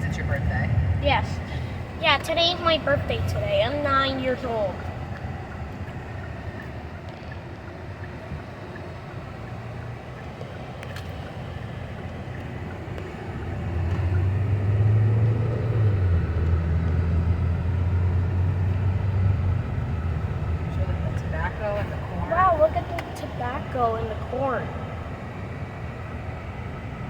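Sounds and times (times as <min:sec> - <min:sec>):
car engine and road noise: 0:00.0 - 0:27.0.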